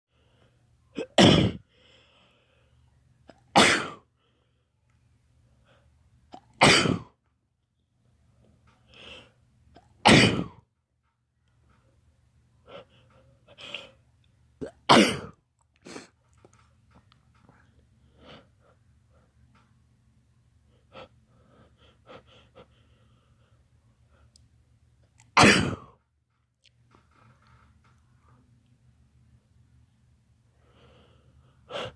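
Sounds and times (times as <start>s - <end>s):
quiet breaths: 0.1s - 1.0s, 1.6s - 6.3s, 7.2s - 10.0s, 11.0s - 14.6s, 15.7s - 25.2s, 26.3s - 31.9s
man sneezing: 1.1s - 1.6s, 10.0s - 10.6s, 14.6s - 15.3s, 25.4s - 25.9s.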